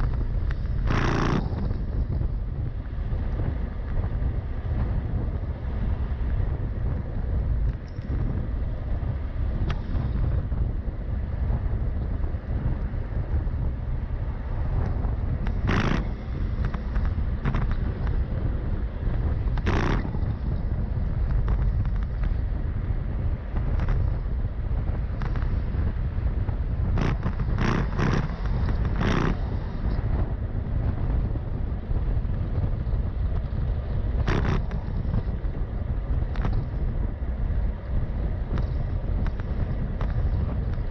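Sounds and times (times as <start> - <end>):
wind buffeting microphone: 0.0 - 40.9
short sharp noise bursts: 0.8 - 1.7, 19.6 - 20.1.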